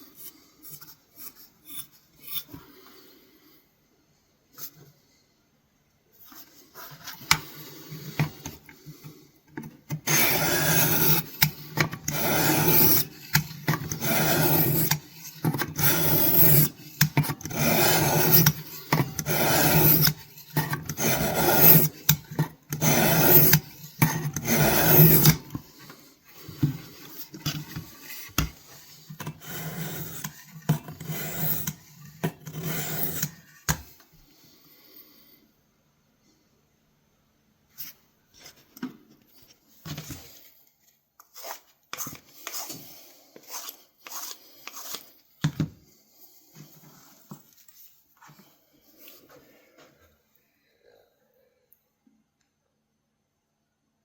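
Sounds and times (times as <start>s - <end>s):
knife blade scraping on abrasive: 0.2s - 2.6s, 9.9s - 25.8s, 26.4s - 33.6s, 43.5s - 45.1s.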